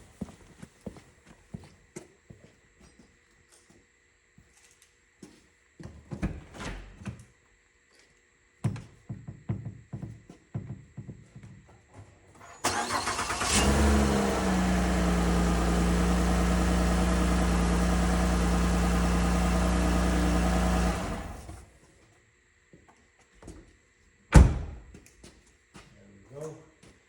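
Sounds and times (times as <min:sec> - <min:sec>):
starter motor cranking: 0:12.6 - 0:21.6
car engine idling: 0:12.7 - 0:21.6.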